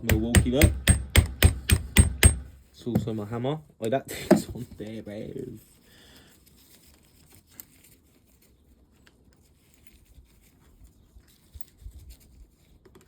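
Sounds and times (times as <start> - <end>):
tools clicking and knocking: 0.0 - 3.1
soft low thumps: 0.0 - 3.2.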